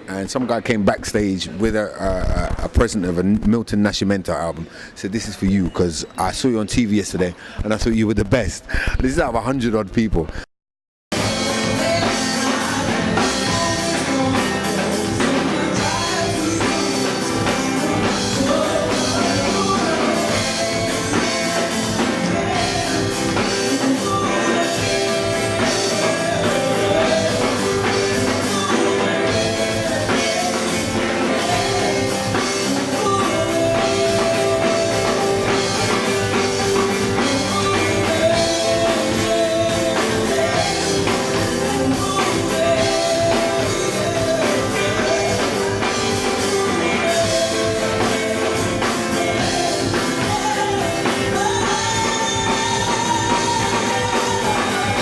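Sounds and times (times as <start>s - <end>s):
live band playing: 11.1s - 55.0s
person singing: 11.1s - 55.0s.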